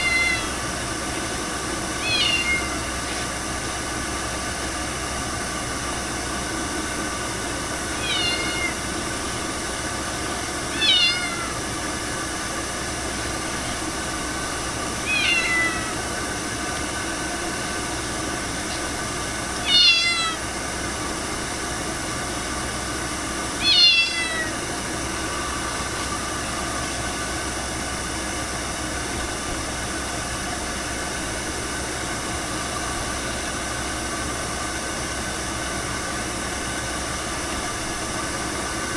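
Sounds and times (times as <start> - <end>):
cat meowing: 0.0 - 0.6, 2.0 - 2.9, 8.0 - 8.9, 10.7 - 11.6, 15.0 - 16.0, 19.6 - 20.4, 23.6 - 24.6.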